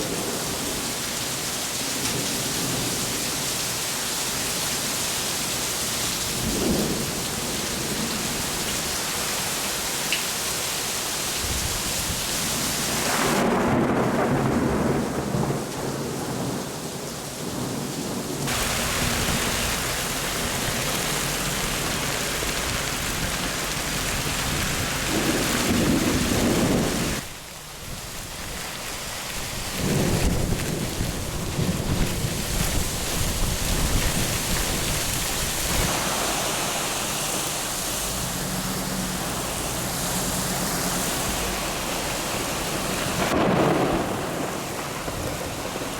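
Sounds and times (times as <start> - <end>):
heavy rain pouring: 0.0 - 45.9
thunder rumbling: 6.3 - 9.0, 12.9 - 16.7, 17.4 - 28.4, 29.4 - 45.9.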